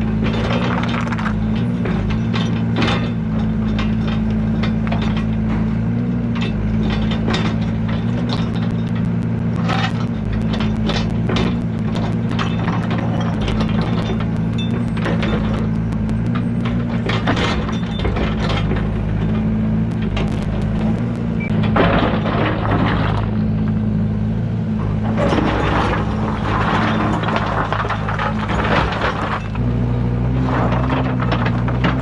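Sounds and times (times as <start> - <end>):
excavator diesel engine running: 0.0 - 32.0
clattering rattling noise: 6.3 - 23.5, 24.8 - 29.7, 30.4 - 32.0.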